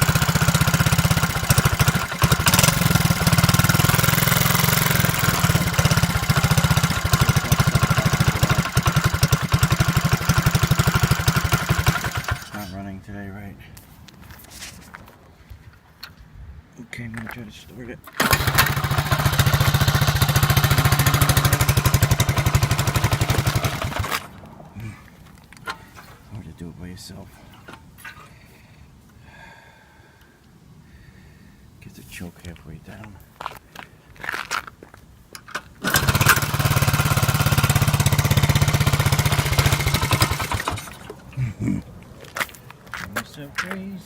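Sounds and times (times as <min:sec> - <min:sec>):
minibike engine running: 0:00.0 - 0:12.7, 0:18.2 - 0:24.4, 0:35.8 - 0:41.2.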